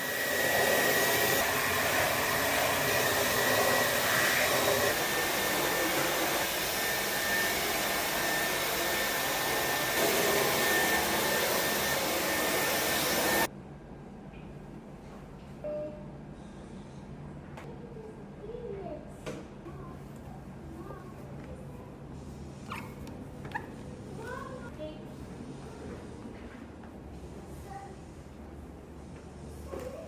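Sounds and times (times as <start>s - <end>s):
vacuum cleaner running: 0.0s - 13.5s.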